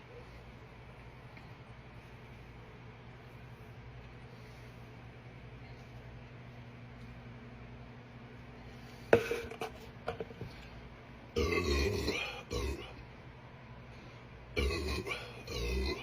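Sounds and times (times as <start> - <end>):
person burping: 11.4 - 13.0, 14.6 - 16.0.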